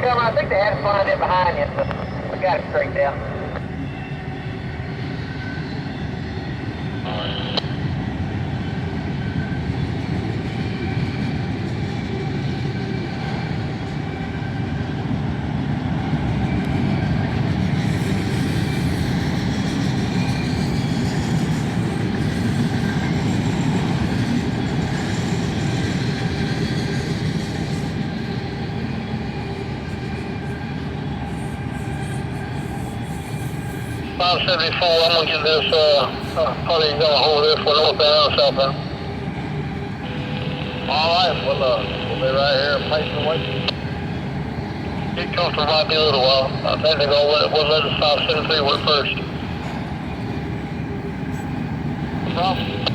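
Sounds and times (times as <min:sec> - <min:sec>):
train wheels rumbling on rails: 0:03.6 - 0:40.1.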